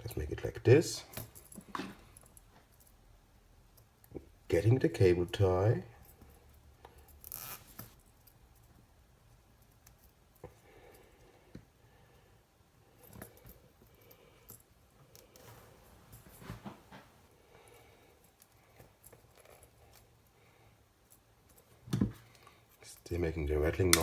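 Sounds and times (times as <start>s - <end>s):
cable tie zip: 7.2s - 8.0s.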